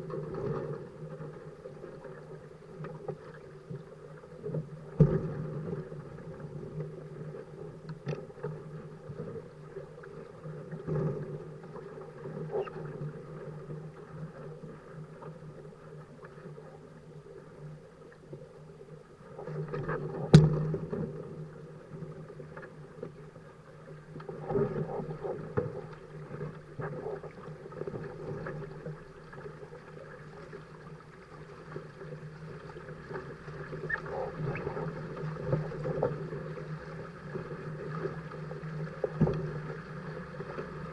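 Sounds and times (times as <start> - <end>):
knocks on boat: 20.3 - 20.7.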